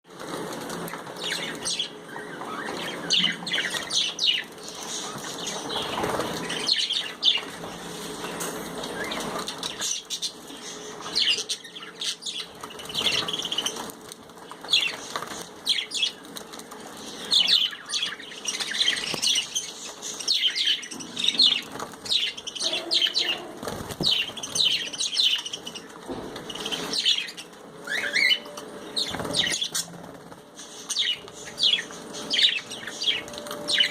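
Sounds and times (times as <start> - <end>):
wings flapping: 0.1 - 1.8, 2.5 - 7.7, 12.2 - 17.6, 21.5 - 28.0, 29.0 - 33.9
budgerigars chirping: 17.0 - 25.9.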